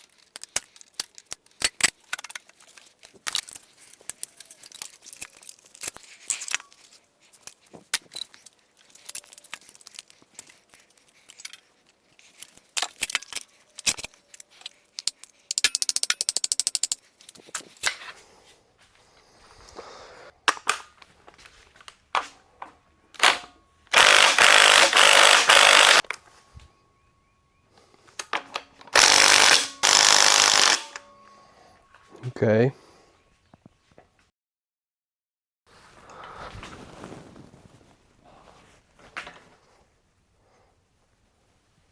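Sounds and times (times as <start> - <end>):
ratchet clicking: 15.0 - 17.0, 23.2 - 26.1, 28.9 - 31.1
impact wrench hammering: 23.2 - 26.1, 29.0 - 31.2
clicks and metallic knocks: 28.2 - 32.2.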